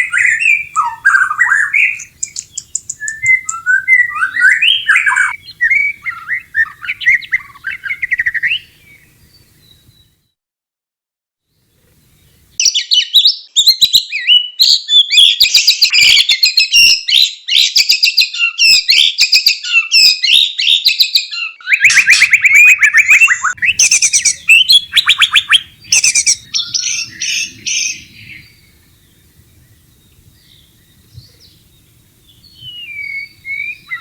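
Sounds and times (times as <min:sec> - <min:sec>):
songbird whistling and trilling: 0:00.0 - 0:10.2, 0:12.0 - 0:34.0.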